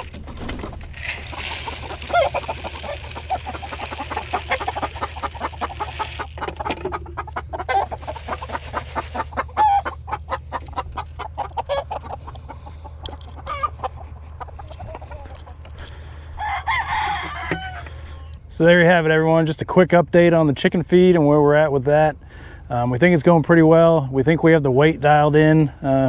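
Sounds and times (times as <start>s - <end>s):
chickens clucking: 0.0s - 26.0s.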